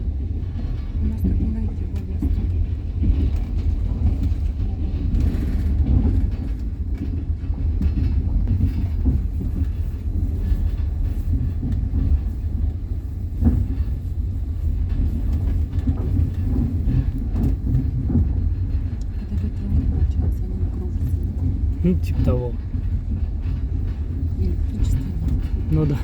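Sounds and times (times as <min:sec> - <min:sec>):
train rumbling: 0:00.0 - 0:26.0.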